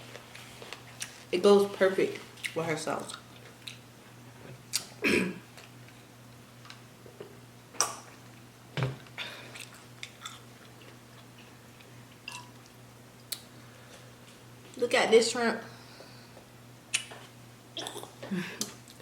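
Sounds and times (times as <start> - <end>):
person chewing and crunching: 2.4 - 3.8, 9.4 - 13.4, 16.9 - 19.0.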